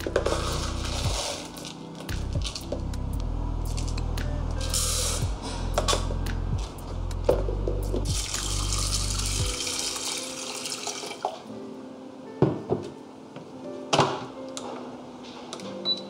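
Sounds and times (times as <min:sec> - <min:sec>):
water running from a tap: 0:08.1 - 0:11.4.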